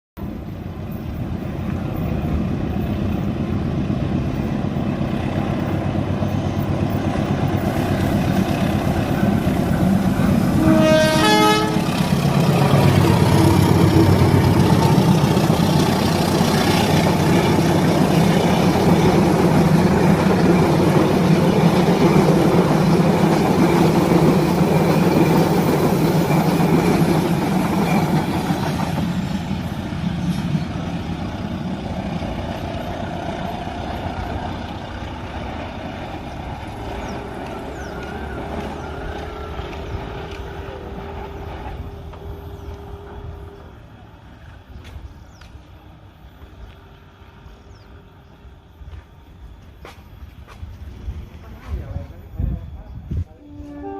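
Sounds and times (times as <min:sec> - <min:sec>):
train rumbling across bridge: 0:00.2 - 0:53.9
train horn: 0:10.2 - 0:12.4, 0:53.3 - 0:53.9.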